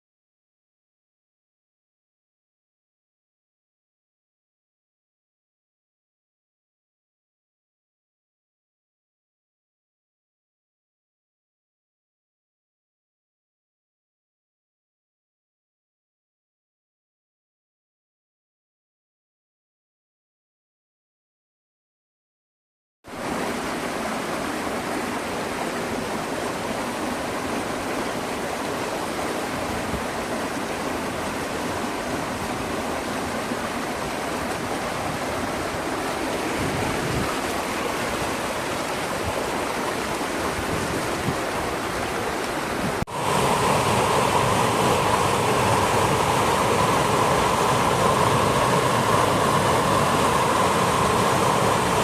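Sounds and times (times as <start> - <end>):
river water rushing: 23.1 - 52.0.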